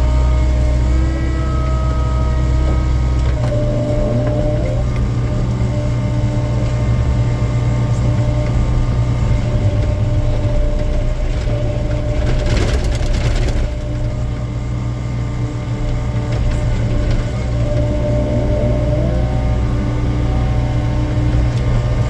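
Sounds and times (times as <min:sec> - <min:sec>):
excavator diesel engine running: 0:00.0 - 0:22.0
rattling noise: 0:02.5 - 0:14.9.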